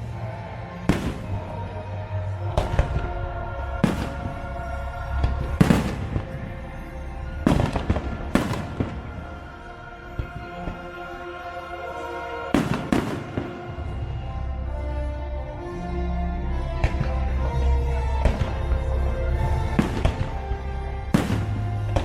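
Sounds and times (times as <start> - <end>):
fireworks show music: 0.0 - 22.0
fireworks bangs: 0.9 - 1.6, 3.8 - 4.5, 5.3 - 6.4, 7.4 - 9.3, 12.5 - 13.7, 21.2 - 22.0.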